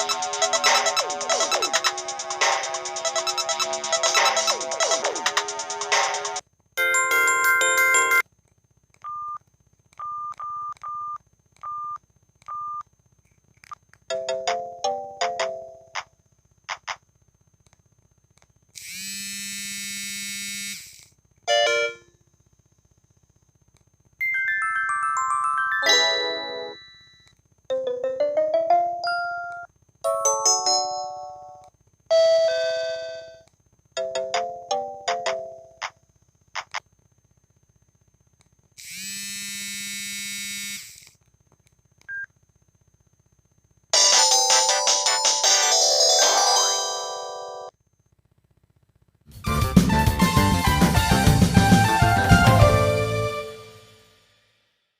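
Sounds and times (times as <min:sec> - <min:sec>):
loud multi-note ringtone: 0:00.0 - 0:05.8, 0:06.8 - 0:08.2, 0:21.5 - 0:22.1, 0:24.2 - 0:33.4, 0:44.0 - 0:47.7
phone alert tones: 0:06.8 - 0:08.2
buzzy electronic phone tone: 0:32.1 - 0:33.4.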